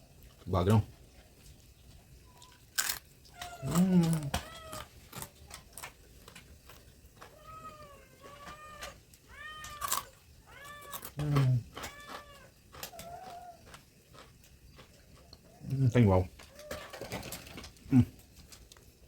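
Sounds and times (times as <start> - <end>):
cat meowing: 3.3 - 4.9, 7.3 - 13.7.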